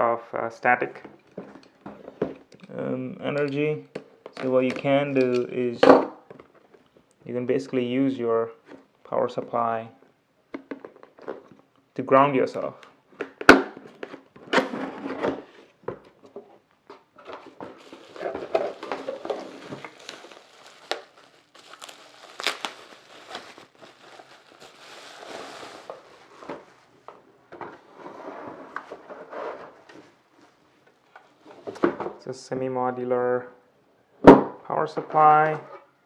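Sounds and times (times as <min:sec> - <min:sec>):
plastic and cardboard rustling: 0:13.2 - 0:32.2.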